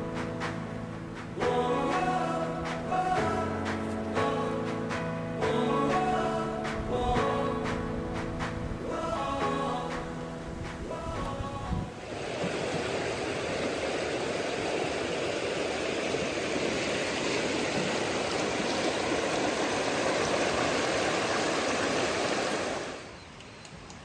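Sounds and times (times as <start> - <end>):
flowing water rushing: 11.8 - 23.2.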